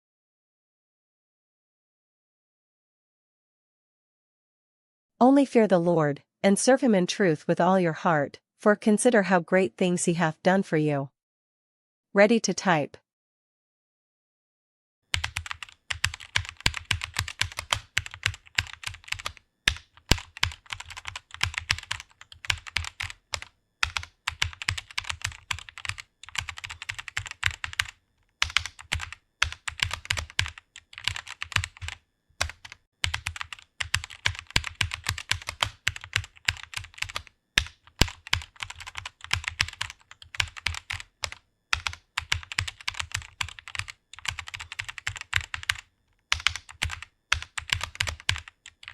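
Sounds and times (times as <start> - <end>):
fast typing on keyboard: 15.1 - 48.9.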